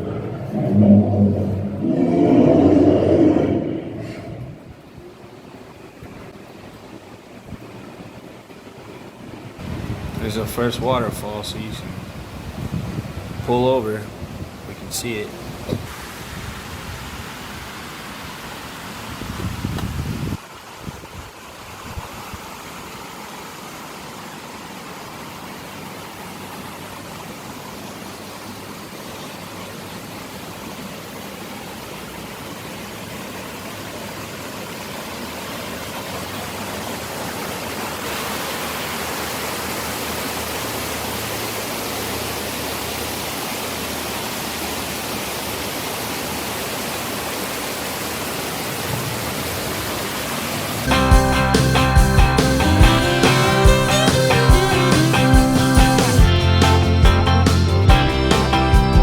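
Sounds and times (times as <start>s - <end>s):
waterfall rushing: 0.0s - 10.0s, 21.3s - 56.8s.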